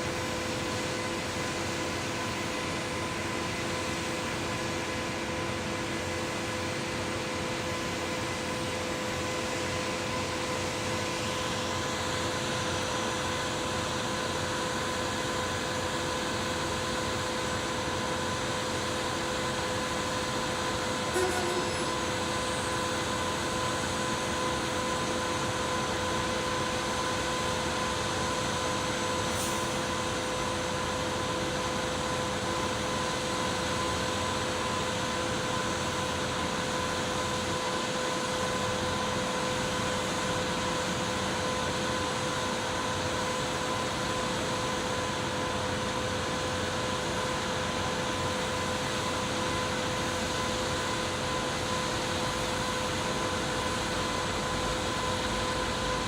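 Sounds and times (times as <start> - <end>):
machine droning: 20.1 - 24.4.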